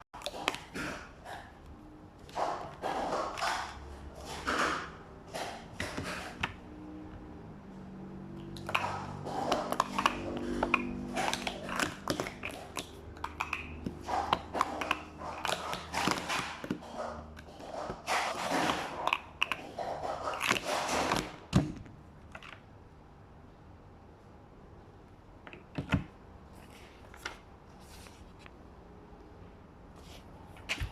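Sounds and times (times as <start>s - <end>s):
plastic cups clacking: 0.2s - 1.2s, 8.4s - 21.4s.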